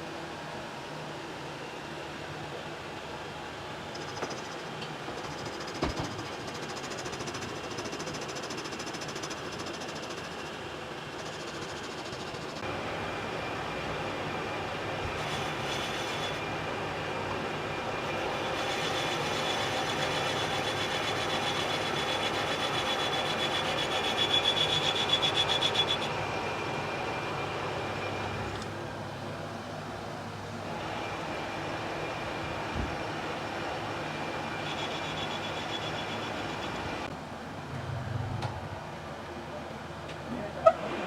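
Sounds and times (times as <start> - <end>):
lathe running: 6.3 - 28.9, 30.6 - 37.1
high pulsing whine: 30.3 - 40.0.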